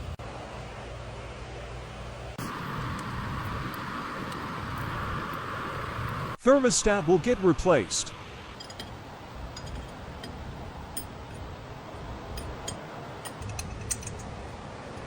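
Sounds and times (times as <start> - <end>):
metal tools clinking: 8.5 - 14.4.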